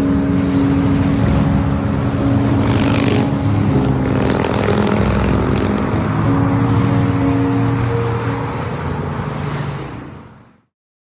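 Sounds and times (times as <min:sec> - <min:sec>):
motorcycle engines droning: 0:00.0 - 0:10.1.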